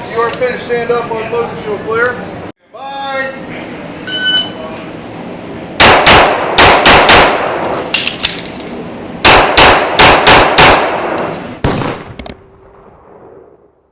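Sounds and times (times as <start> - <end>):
handgun shots indoors: 11.6 - 12.5.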